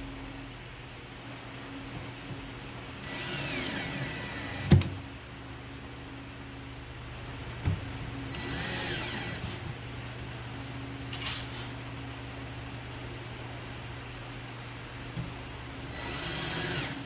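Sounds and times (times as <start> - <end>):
electric drill driving screws: 3.0 - 4.9, 8.3 - 9.6, 15.9 - 17.0.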